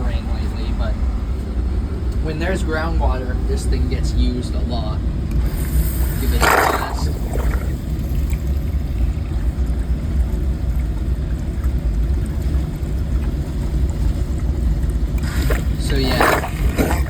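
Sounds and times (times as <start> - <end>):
pump motor rumble: 0.0 - 17.0
water pouring: 5.3 - 17.0.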